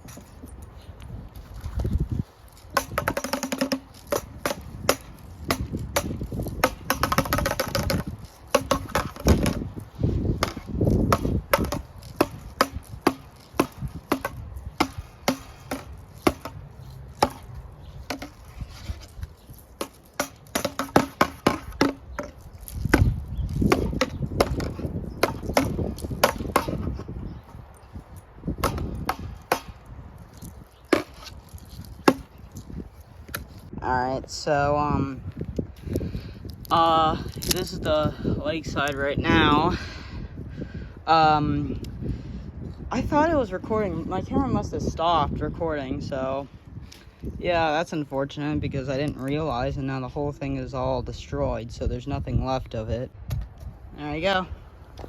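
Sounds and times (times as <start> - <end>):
fan blades whacking a bat: 2.6 - 18.4, 19.8 - 27.1, 28.5 - 29.9.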